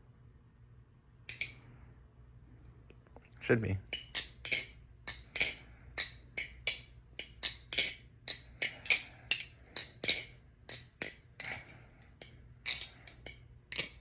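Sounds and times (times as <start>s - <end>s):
butterfly knife metal clacks: 1.3s - 1.6s, 3.9s - 14.0s.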